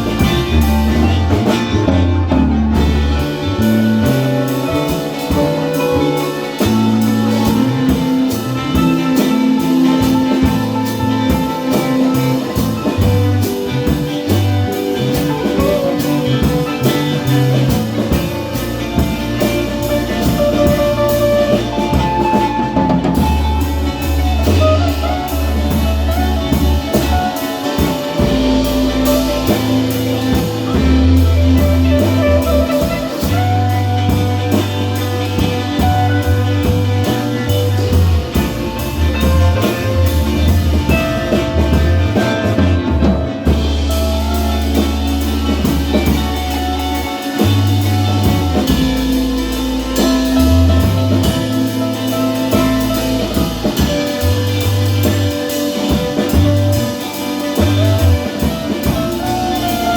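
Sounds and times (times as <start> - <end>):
instrumental rock music: 0.0 - 59.9.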